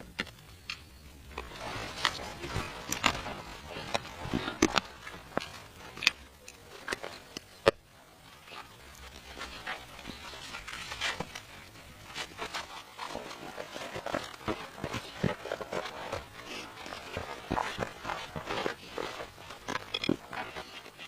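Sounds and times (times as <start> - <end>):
rustling scrapes: 0.9 - 21.0.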